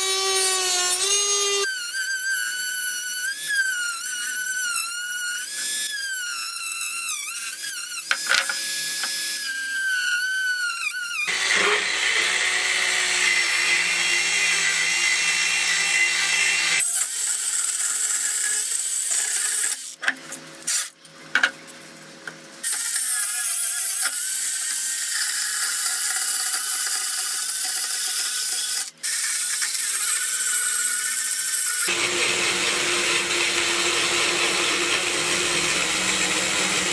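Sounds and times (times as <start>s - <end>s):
power tool whining: 0.0s - 17.1s, 28.8s - 36.9s.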